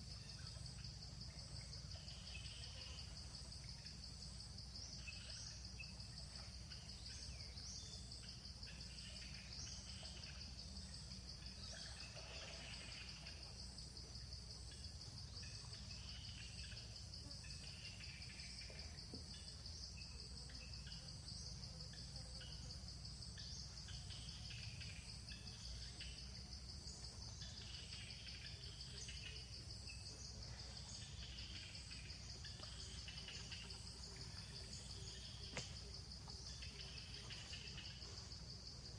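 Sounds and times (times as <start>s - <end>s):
insect trill: 0.0s - 38.9s.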